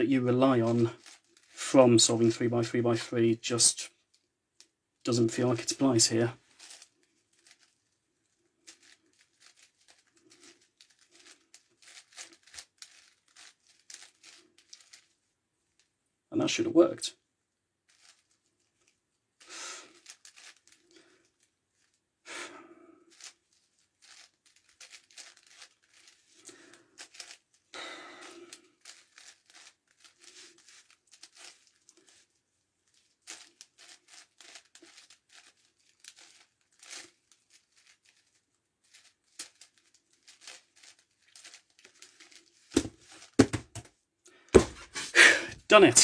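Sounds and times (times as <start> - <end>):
puzzle cube clicking and scraping: 0.6 - 2.3, 8.6 - 15.1, 17.9 - 18.4, 19.4 - 21.4, 23.1 - 32.4, 33.0 - 43.9.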